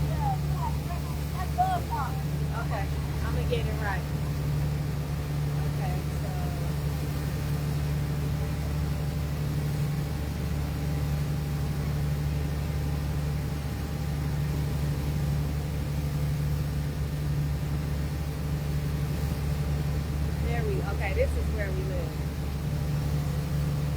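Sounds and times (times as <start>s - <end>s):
boat engine droning: 0.0s - 23.9s.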